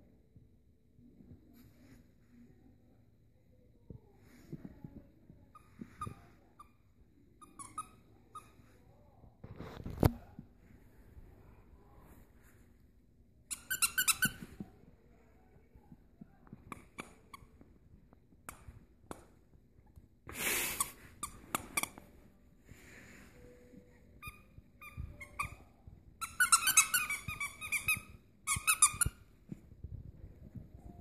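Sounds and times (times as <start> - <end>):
squeaky toy squeaking: 7.4 - 8.6, 13.5 - 14.5, 24.2 - 29.2.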